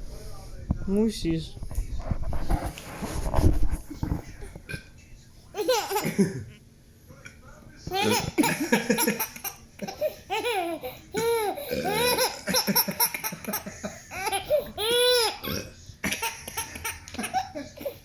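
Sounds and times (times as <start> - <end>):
baby laughing: 5.5 - 6.4, 7.9 - 18.0.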